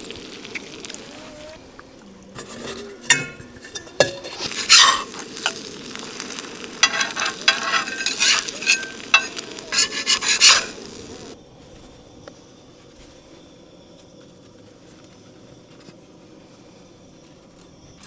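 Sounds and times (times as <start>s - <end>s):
food sizzling in a frying pan: 0.0s - 11.4s
utensil scraping a pan: 0.0s - 11.4s.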